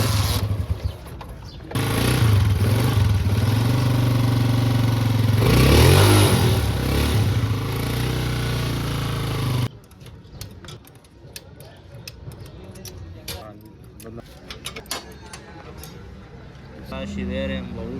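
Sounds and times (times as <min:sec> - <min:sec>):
motorcycle engine idling: 0:00.0 - 0:09.7.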